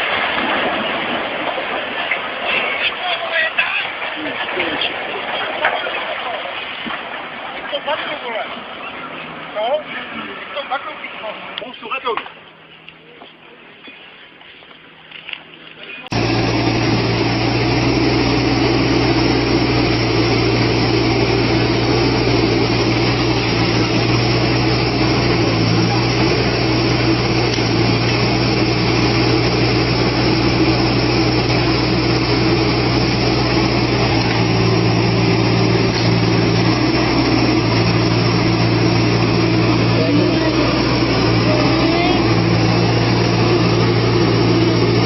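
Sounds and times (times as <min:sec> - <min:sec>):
heavy machine engine humming: 0:16.1 - 0:45.0.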